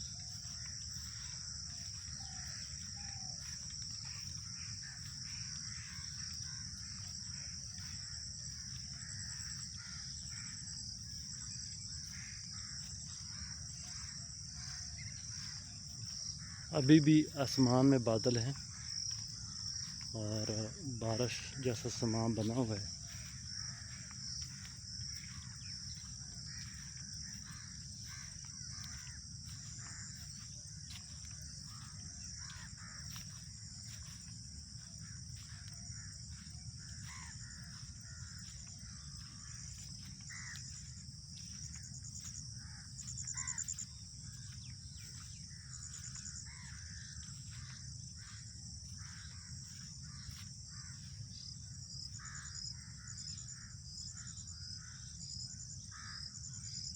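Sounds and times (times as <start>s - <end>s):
insects chirping: 0.0s - 56.9s.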